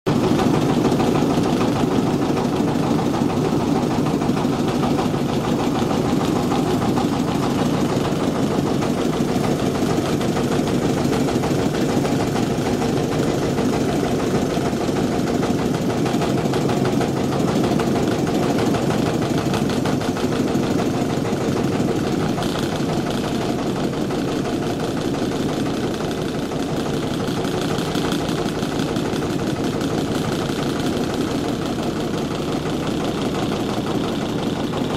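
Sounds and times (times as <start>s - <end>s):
motorcycle engine running: 0.1s - 34.9s.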